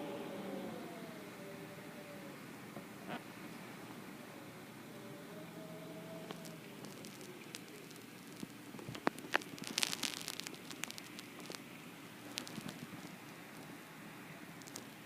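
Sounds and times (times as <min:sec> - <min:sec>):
wind and rain rushing: 0:00.0 - 0:15.0
sharp ticks and patters: 0:06.2 - 0:13.8.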